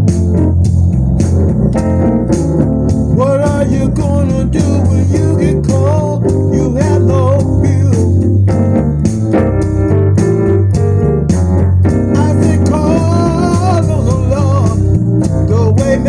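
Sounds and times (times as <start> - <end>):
instrumental music with bass: 0.0 - 16.0
person singing: 3.1 - 8.2, 12.2 - 16.0.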